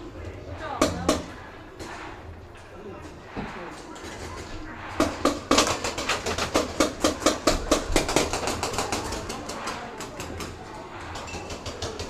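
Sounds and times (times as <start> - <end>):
paintball marker rapid fire: 5.0 - 10.4.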